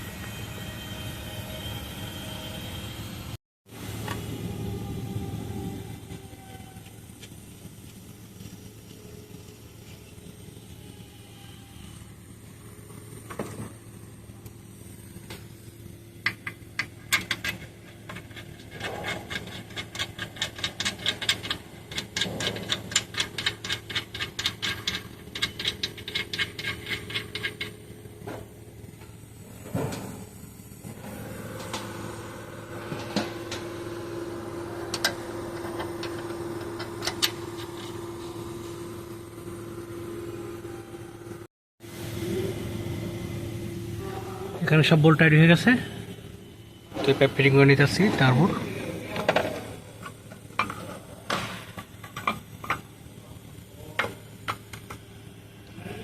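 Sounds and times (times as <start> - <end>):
steady hum: 0.0 - 56.0
ratchet wrench clicking: 16.2 - 27.8.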